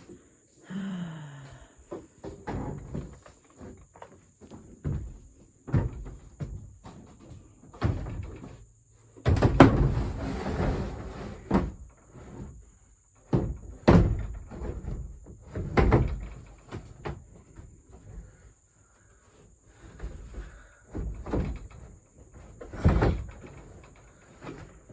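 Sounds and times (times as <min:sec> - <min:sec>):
crickets chirring: 0:00.0 - 0:24.9
plastic panels knocking: 0:04.6 - 0:08.6, 0:09.2 - 0:10.2, 0:13.2 - 0:18.2, 0:19.8 - 0:24.9
rattling scrape: 0:09.8 - 0:12.7.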